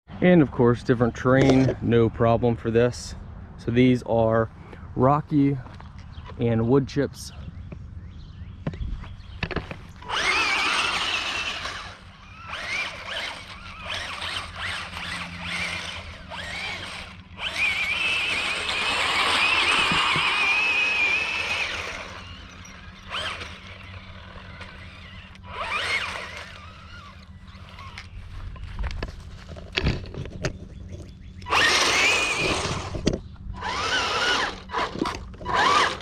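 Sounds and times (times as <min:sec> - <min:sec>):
small electric motors whining: 0:09.1 - 0:36.0.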